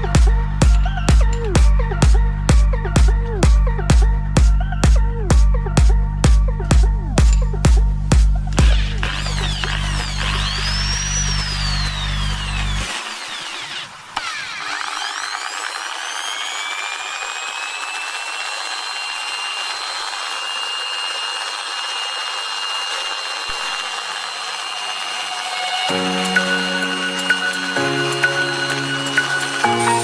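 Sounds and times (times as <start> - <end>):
electric drill whining: 6.7 - 30.0.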